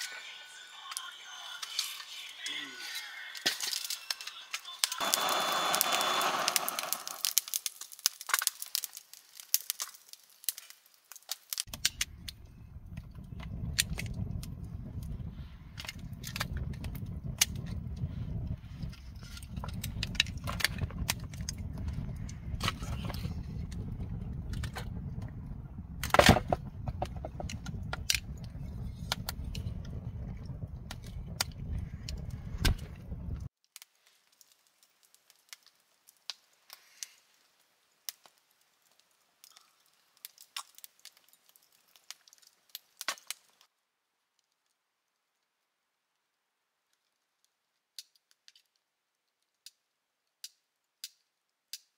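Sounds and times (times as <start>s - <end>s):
wood fire crackling and popping: 0.8s - 51.9s
low rumble: 11.7s - 33.5s.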